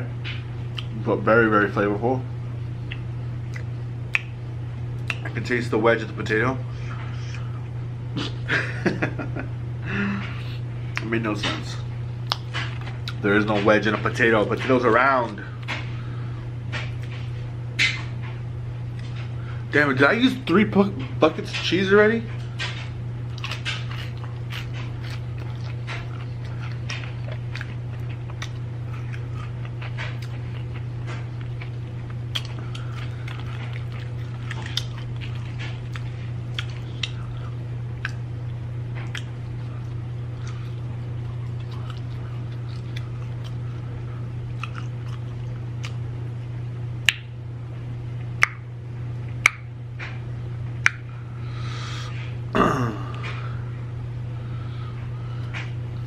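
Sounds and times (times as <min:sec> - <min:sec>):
low hum: 0:00.0 - 0:56.0
wet mouth clicks: 0:02.8 - 0:04.4, 0:05.0 - 0:05.4, 0:12.2 - 0:13.2, 0:47.0 - 0:47.3, 0:48.4 - 0:48.6
sharp mouth smacks: 0:02.9 - 0:04.4, 0:05.0 - 0:05.3, 0:47.0 - 0:47.3, 0:48.4 - 0:48.6, 0:50.8 - 0:51.0
person chewing crunchy food: 0:12.2 - 0:13.2, 0:22.4 - 0:46.1.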